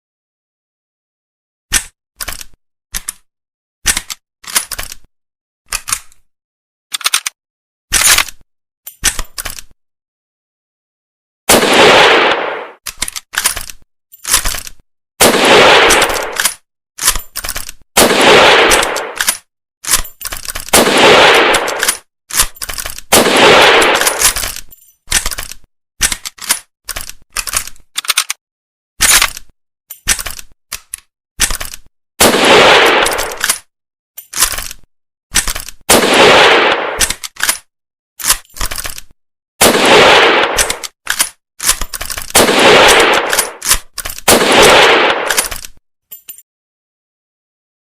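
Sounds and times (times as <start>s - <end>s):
rifle bolt clicking: 1.7s - 3.2s, 6.9s - 9.7s, 15.9s - 17.8s, 18.7s - 20.9s, 21.5s - 23.1s, 23.8s - 28.4s, 33.0s - 34.8s, 35.4s - 35.8s, 36.6s - 39.1s, 40.3s - 46.4s
rifle shots: 11.5s - 12.8s, 15.2s - 16.6s, 18.0s - 19.4s, 20.6s - 22.1s, 23.1s - 24.5s, 32.2s - 33.6s, 35.9s - 37.2s, 39.6s - 40.9s, 42.3s - 45.6s.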